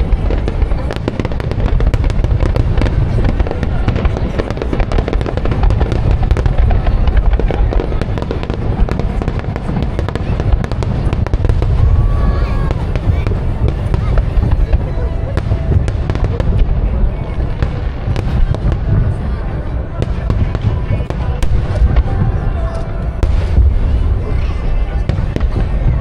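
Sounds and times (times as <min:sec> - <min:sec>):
fireworks crackling: 0:00.0 - 0:26.0
low fireworks booms: 0:00.0 - 0:26.0.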